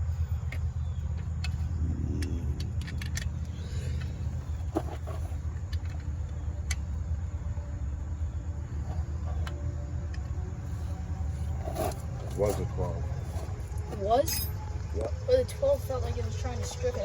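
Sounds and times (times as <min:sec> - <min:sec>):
low engine hum: 0:00.0 - 0:17.0
short metal ring: 0:14.2 - 0:14.6.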